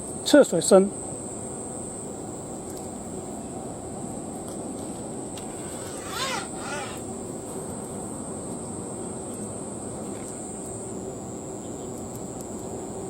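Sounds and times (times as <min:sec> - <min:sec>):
high-pitched whine: 0:00.0 - 0:13.0
outdoor background: 0:00.0 - 0:13.0
animal crying: 0:05.6 - 0:07.0.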